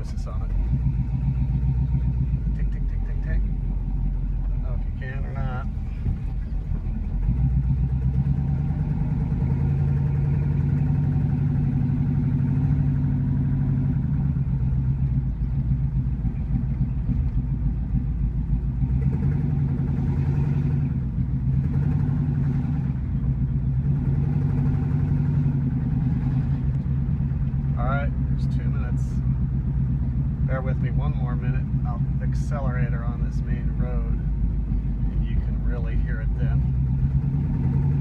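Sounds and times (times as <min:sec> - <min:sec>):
car engine running: 0:00.0 - 0:38.0.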